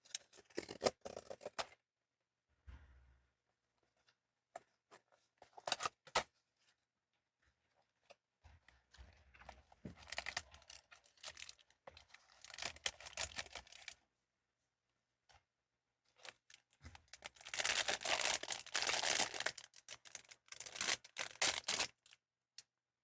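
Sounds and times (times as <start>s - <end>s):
packaging tearing and crinkling: 17.2s - 22.1s.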